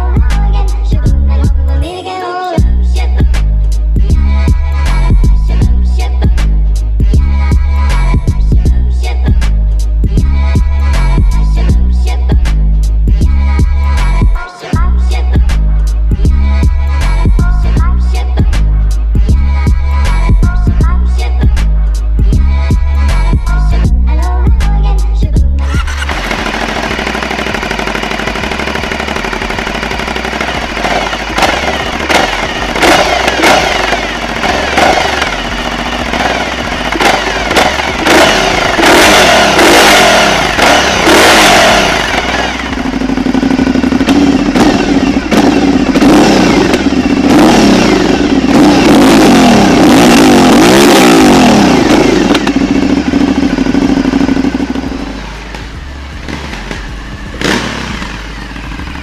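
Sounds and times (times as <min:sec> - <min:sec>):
motorcycle engine revving: 0:02.6 - 0:59.0
exhaust pops and crackles: 0:25.9 - 0:47.6, 0:50.4 - 0:54.8.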